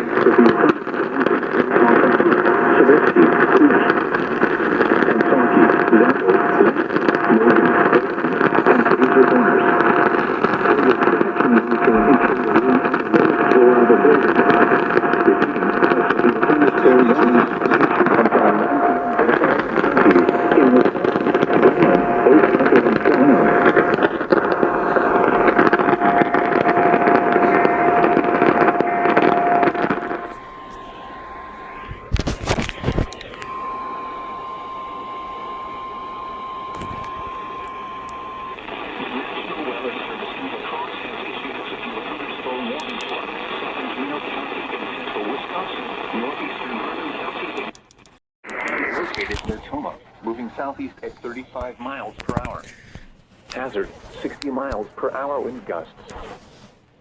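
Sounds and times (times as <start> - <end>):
voice over radio: 0.0 - 47.7, 48.5 - 56.6
radio static hiss: 0.0 - 57.0
constant whistle tone: 29.1 - 47.3.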